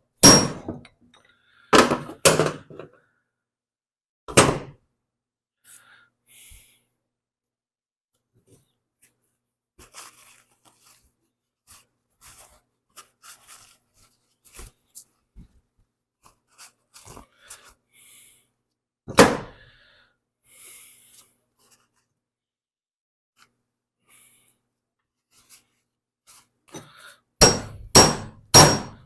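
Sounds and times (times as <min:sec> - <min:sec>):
loud metallic knock: 0:00.2 - 0:00.8, 0:04.3 - 0:04.7, 0:27.4 - 0:29.0.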